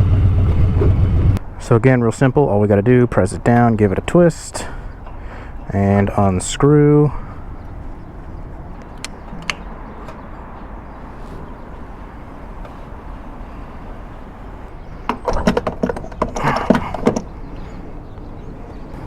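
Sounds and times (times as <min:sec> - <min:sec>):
fuel nozzle metallic clicks: 0:08.7 - 0:10.2.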